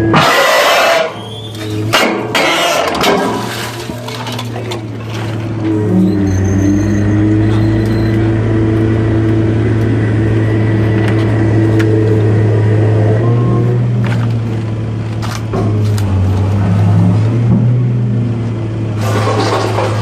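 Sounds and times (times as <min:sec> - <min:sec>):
hydraulic baler humming: 0:00.0 - 0:20.0
scrap metal clicks and knocks: 0:01.9 - 0:05.5.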